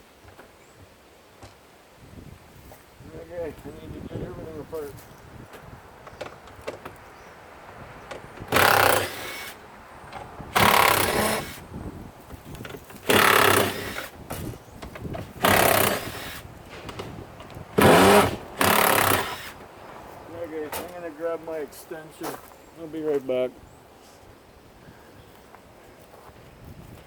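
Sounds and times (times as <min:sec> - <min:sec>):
power tool bursts: 0:08.5 - 0:09.6, 0:10.5 - 0:11.6, 0:13.0 - 0:14.2, 0:15.4 - 0:16.4, 0:17.8 - 0:19.6.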